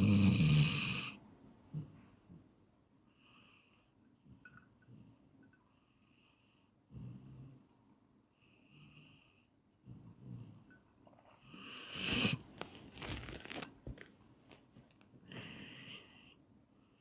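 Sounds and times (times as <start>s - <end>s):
low rasping snore: 0.0s - 1.2s, 11.5s - 12.4s
harsh snort: 11.7s - 12.4s.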